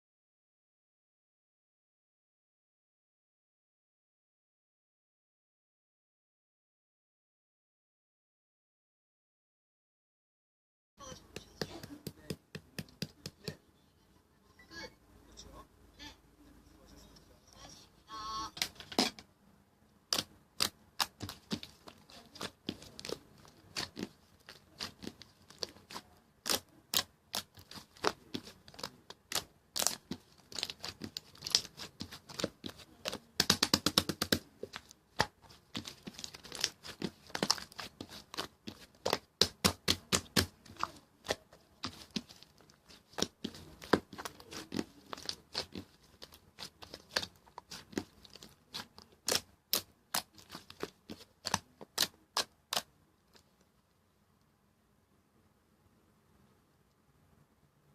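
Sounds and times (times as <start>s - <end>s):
slime crackling and popping by hand: 20.1s - 53.5s.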